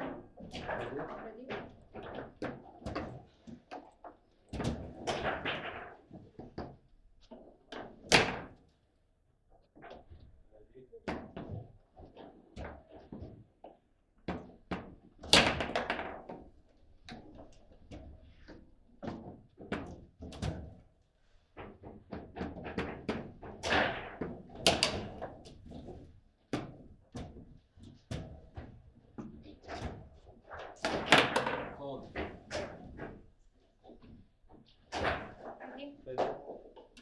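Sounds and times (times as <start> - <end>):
table football ball clacks: 30.8 - 31.8.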